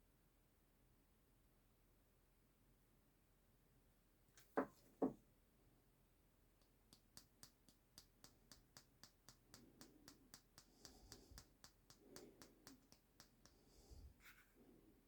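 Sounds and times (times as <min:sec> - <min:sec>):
rapid faint clicking: 0:06.9 - 0:14.2.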